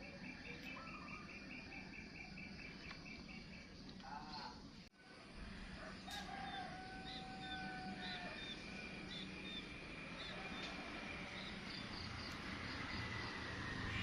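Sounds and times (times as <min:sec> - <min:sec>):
rooster crowing: 0:05.2 - 0:09.0.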